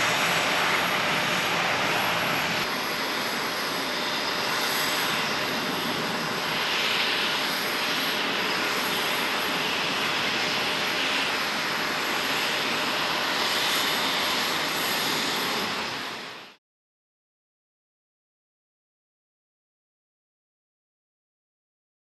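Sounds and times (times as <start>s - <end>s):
high jet whine: 0.0s - 16.6s
jet engine roar: 0.0s - 16.6s.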